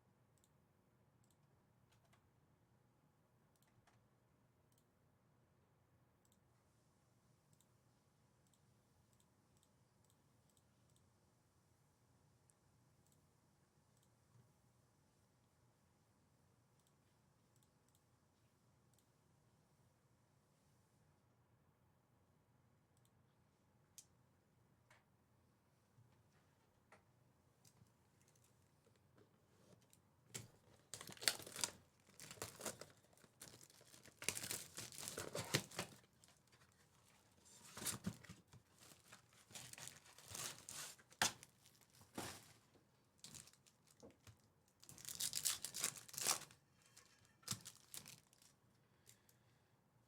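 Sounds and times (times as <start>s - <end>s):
card wrappers tearing and crinkling: 30.8s - 36.8s, 37.6s - 42.5s, 43.3s - 44.0s, 44.8s - 48.5s.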